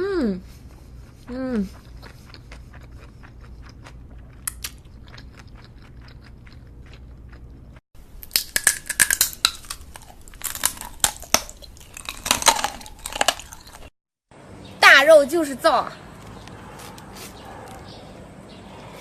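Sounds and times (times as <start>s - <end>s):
wet mouth clicks and chewing: 0.6s - 13.9s, 16.2s - 17.9s
loud crunching bites: 8.1s - 13.9s, 16.1s - 17.9s.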